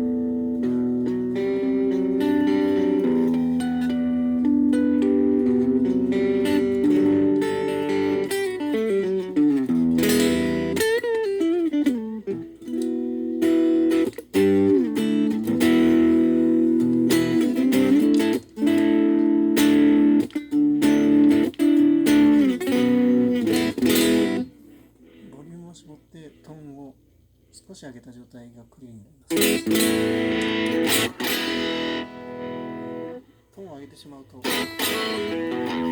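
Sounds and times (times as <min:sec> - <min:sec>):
electric guitar playing: 0:00.0 - 0:25.5, 0:29.3 - 0:35.9.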